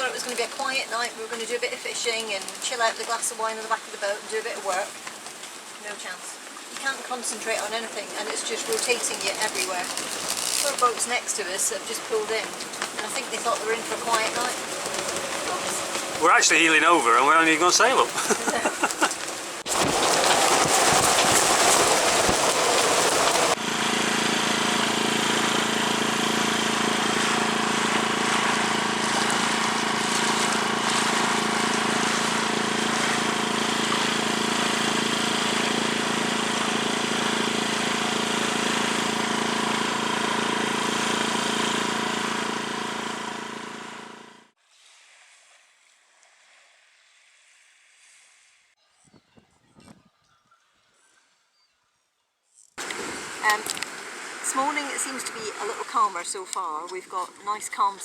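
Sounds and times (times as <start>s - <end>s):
steady motor drone: 19.7s - 44.5s.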